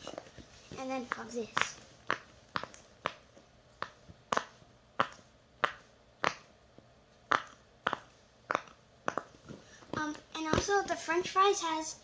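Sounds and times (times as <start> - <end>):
fidget toy bubbles popping: 0.9 - 6.5, 7.3 - 10.7.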